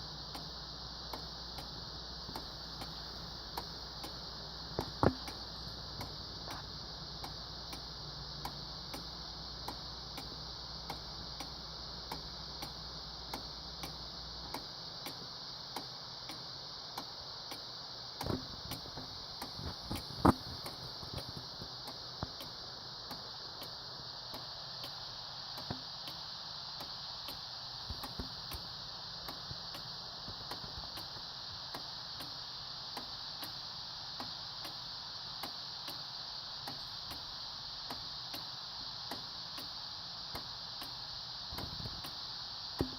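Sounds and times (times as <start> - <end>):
clock ticking: 0.3 - 15.2, 29.3 - 32.4.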